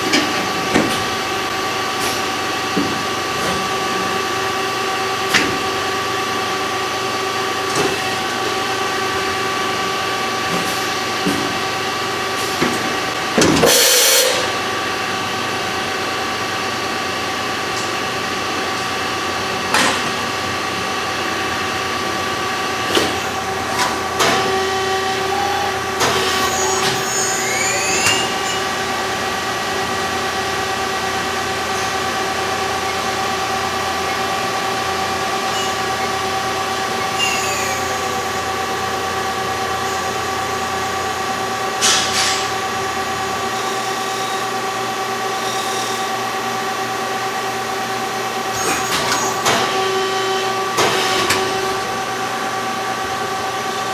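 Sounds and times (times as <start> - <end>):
cnc machine whining: 14.2 - 53.9
brief rising tones: 26.5 - 28.9.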